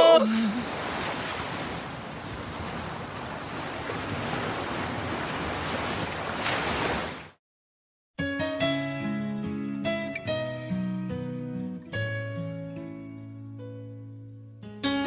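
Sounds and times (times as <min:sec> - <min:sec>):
ocean surf washing: 0:00.0 - 0:07.3.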